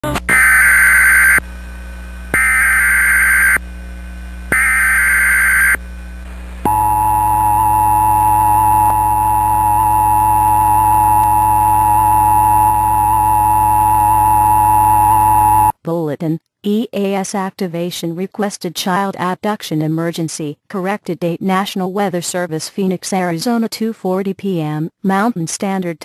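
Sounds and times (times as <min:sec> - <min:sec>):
harsh buzzing data noise: 0:00.3 - 0:15.7
two-tone alert signal: 0:06.7 - 0:15.7.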